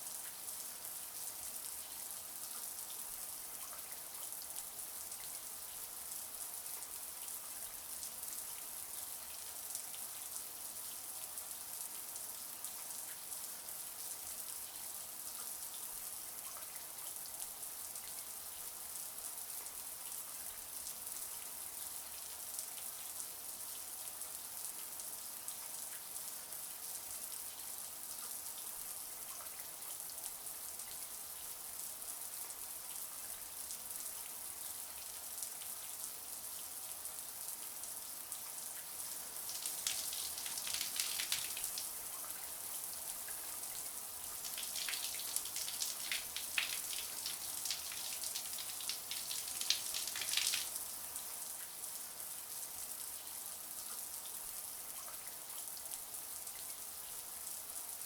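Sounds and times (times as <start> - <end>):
shower water spraying: 39.4 - 41.9, 44.4 - 50.8.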